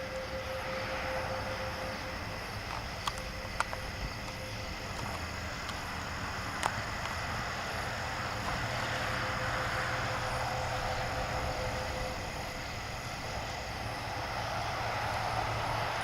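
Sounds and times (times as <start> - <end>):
faint held tone: 0.0 - 5.8
aircraft engine drone: 0.0 - 16.0.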